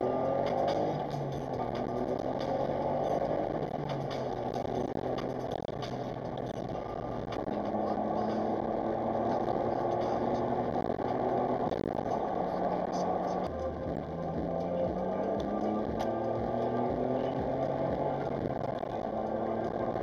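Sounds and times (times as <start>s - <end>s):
car engine running: 0.0s - 20.0s
road noise: 0.0s - 20.0s.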